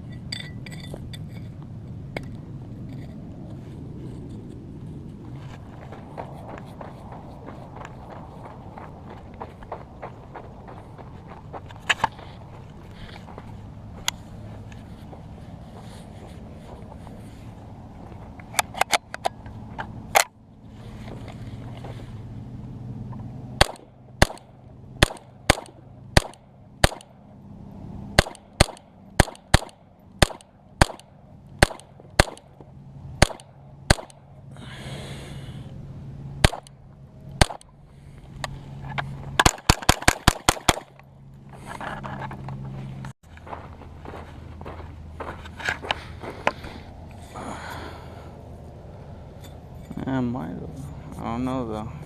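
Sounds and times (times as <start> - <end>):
gunshots: 23.6 - 24.4, 25.0 - 27.1, 28.2 - 31.0, 31.6 - 32.4, 33.2 - 34.1, 39.4 - 40.9.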